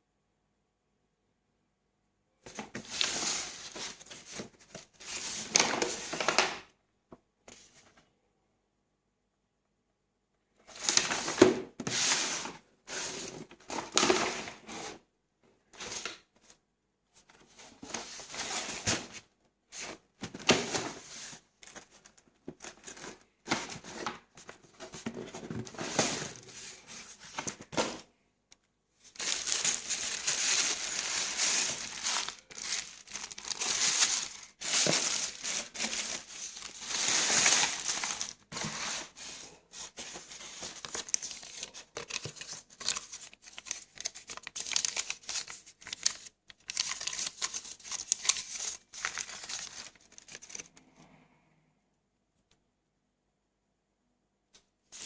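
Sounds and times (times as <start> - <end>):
packaging crinkling and tearing: 29.1 - 39.1, 39.8 - 50.7.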